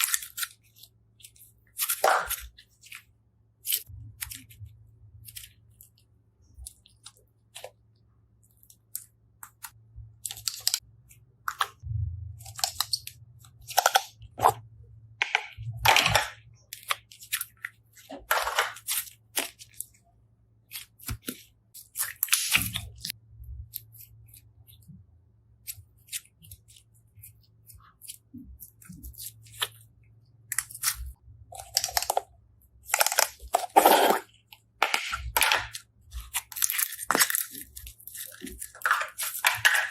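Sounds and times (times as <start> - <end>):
faint low hum: 2.4 - 18.7.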